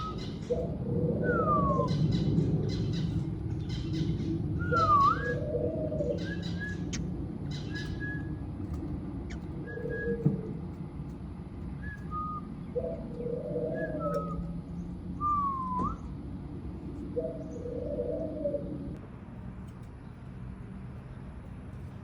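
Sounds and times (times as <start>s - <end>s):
bird warbling: 0.0s - 8.5s, 9.2s - 10.5s
birds whistling: 0.0s - 10.7s, 11.7s - 16.3s, 17.1s - 18.9s
steady low rumble: 0.0s - 22.0s.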